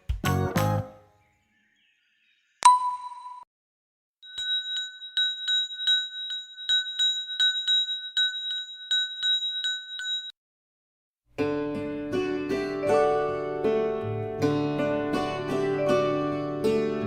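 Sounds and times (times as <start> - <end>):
bell ringing: 4.2 - 10.4.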